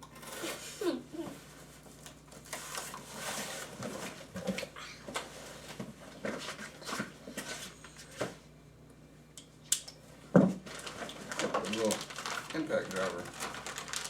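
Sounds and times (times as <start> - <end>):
packaging rustling and knocking: 10.4 - 14.0.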